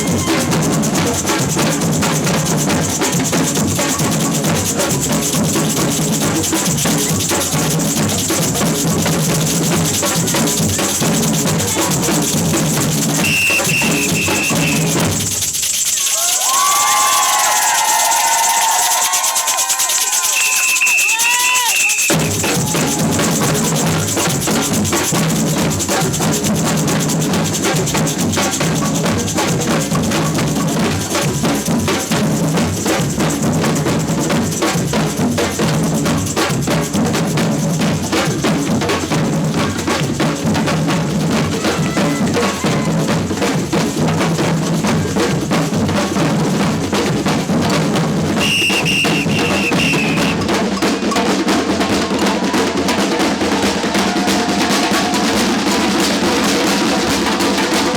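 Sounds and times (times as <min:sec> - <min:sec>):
samba percussion band: 0:00.0 - 0:57.9
high whistle blast: 0:13.2 - 0:22.9, 0:48.4 - 0:50.5.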